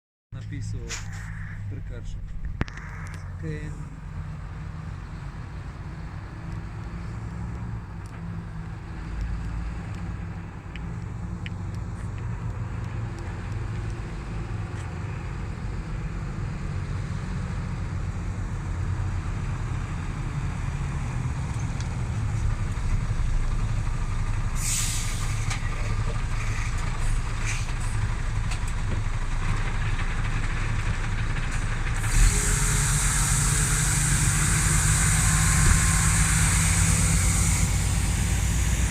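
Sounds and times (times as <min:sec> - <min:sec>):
heavy truck engine rumbling: 0:00.3 - 0:38.9
hiss: 0:24.6 - 0:25.6, 0:32.0 - 0:38.9.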